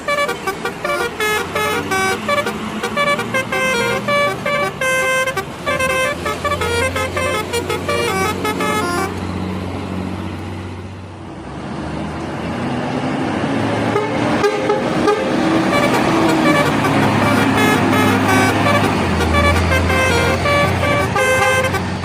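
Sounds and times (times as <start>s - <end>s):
multi-tone bus horn tune: 0.0s - 9.4s, 13.8s - 22.0s
engine and road noise: 0.0s - 22.0s.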